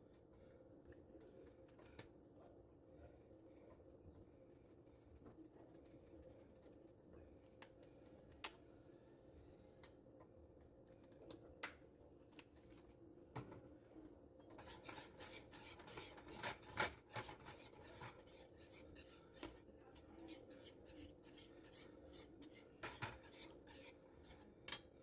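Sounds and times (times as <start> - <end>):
faint steady hum: 0.0 - 25.0
utensil scraping in cooking pot: 14.4 - 24.9.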